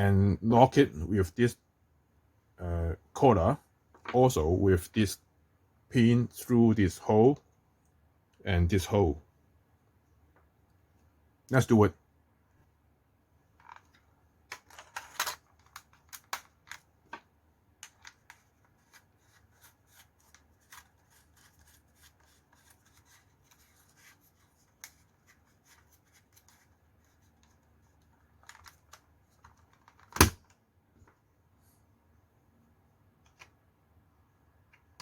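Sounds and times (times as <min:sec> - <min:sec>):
plastic parts clicking and scraping: 0:13.6 - 0:30.6.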